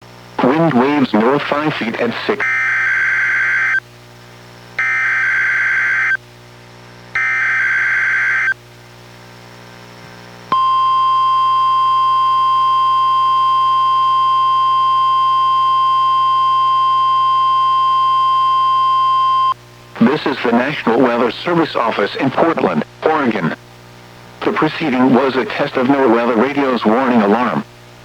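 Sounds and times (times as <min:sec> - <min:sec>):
steady warning alarm tone: 0:02.3 - 0:03.8, 0:04.8 - 0:06.2, 0:07.2 - 0:08.6, 0:10.5 - 0:19.6
buzzing warble data bursts: 0:04.8 - 0:06.2, 0:07.2 - 0:08.6.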